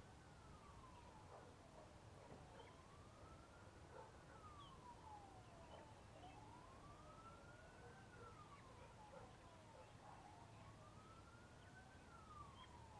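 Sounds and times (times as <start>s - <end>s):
rain: 0.1s - 0.9s
distant siren wailing: 0.4s - 1.4s, 2.4s - 12.9s.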